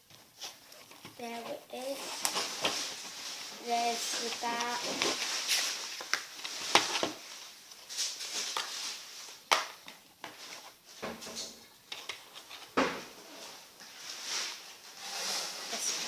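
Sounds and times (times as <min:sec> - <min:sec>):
plastic disc case rustling: 0:00.0 - 0:11.0, 0:11.8 - 0:13.0.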